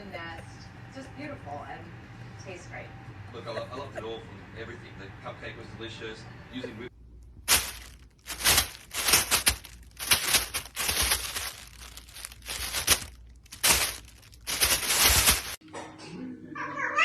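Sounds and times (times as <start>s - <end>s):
crinkling and tearing: 7.3s - 15.6s.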